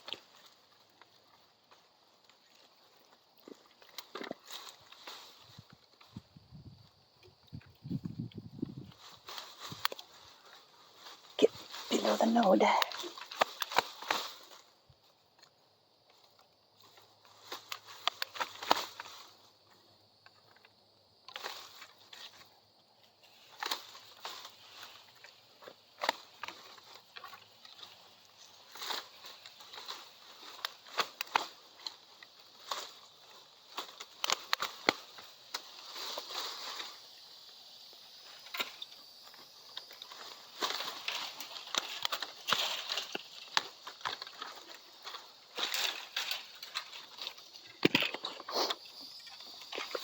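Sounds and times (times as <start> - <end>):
bamboo rustling: 0.0 - 50.0
bamboo snapping and clicking: 3.4 - 5.4, 9.3 - 10.2, 12.8 - 14.6, 15.3 - 19.3, 20.2 - 22.5, 23.3 - 28.0, 28.7 - 36.9, 38.4 - 50.0.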